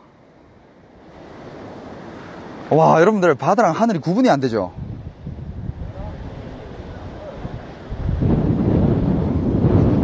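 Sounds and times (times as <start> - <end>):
wind buffeting microphone: 4.4 - 10.0.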